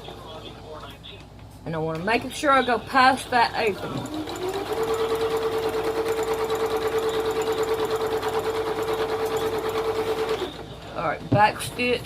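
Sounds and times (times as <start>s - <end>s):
sewing machine running: 3.7s - 10.6s.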